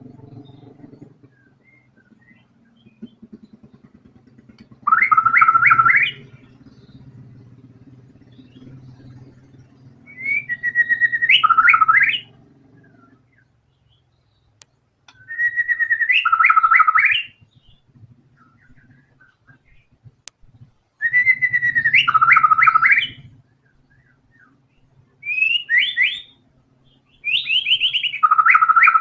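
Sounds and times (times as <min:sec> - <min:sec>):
bird singing: 0:00.0 - 0:29.0
faint low hum: 0:00.0 - 0:29.0.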